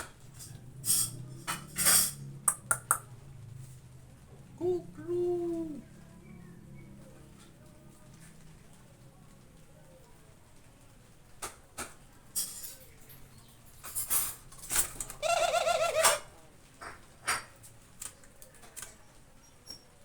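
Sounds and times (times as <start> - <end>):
sharp clicks and taps: 2.4 - 3.1
dove cooing: 4.4 - 6.4, 15.1 - 16.3.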